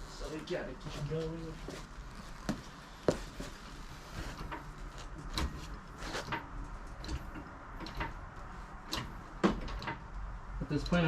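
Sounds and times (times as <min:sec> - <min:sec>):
vehicle lift clacks and knocks: 0:04.3 - 0:10.2.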